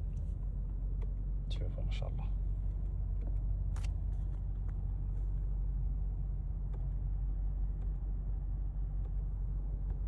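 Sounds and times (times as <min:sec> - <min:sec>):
car engine rumbling: 0:00.0 - 0:10.0.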